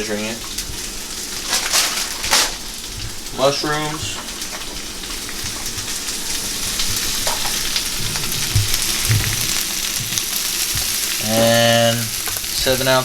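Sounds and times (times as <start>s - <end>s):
vegetables sizzling in a frying pan: 0.0s - 13.0s
soft knocks: 7.3s - 11.0s.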